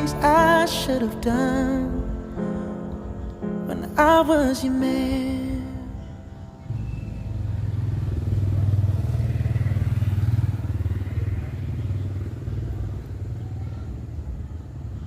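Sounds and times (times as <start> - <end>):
vehicle engine passing by: 6.7 - 15.0.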